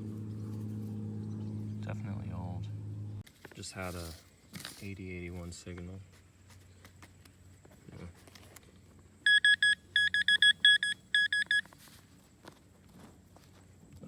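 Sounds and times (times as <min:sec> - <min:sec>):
metal detector beeping: 0:09.3 - 0:11.7.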